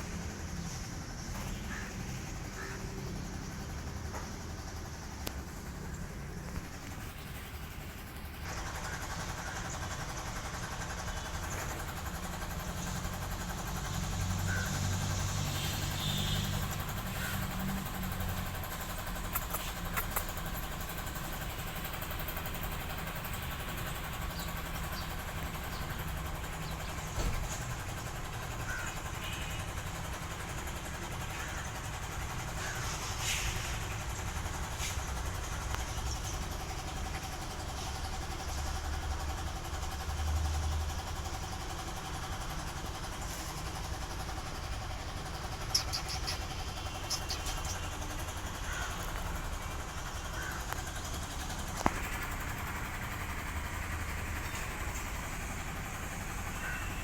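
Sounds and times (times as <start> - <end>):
kitten purring: 19.1 - 20.6.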